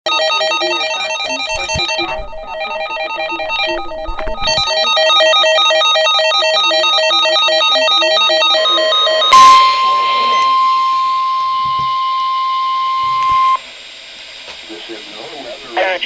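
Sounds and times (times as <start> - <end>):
electronic plucked melody: 0.1 - 6.0, 8.0 - 12.2.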